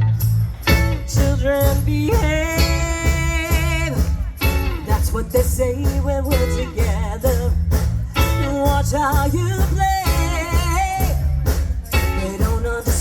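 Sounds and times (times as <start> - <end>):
pop rock band playing: 0.0 - 13.0.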